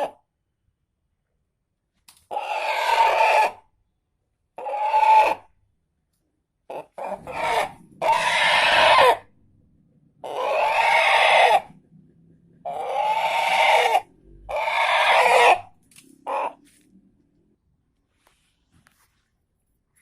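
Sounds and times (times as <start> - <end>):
chicken giving drawn-out calls: 2.3 - 3.6, 4.6 - 5.5, 6.7 - 9.3, 10.2 - 11.7, 12.7 - 16.6.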